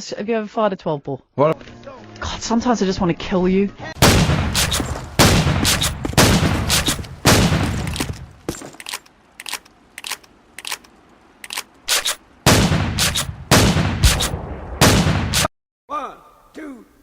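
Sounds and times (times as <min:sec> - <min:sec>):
echoing shotgun blasts: 0:04.0 - 0:08.5, 0:11.8 - 0:15.5.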